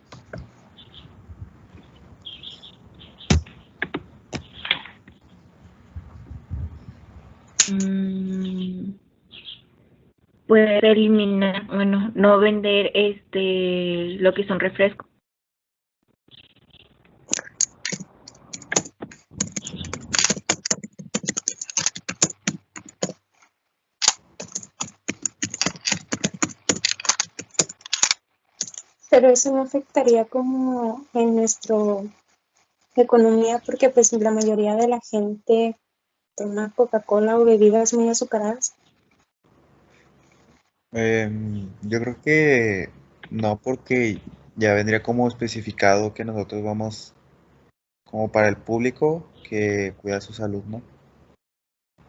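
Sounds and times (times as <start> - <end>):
sharp clicks and taps: 3.3 - 4.9, 17.3 - 23.2, 24.0 - 28.9
keyboard typing: 3.3 - 5.2, 17.3 - 23.2, 24.0 - 28.9, 33.8 - 35.0.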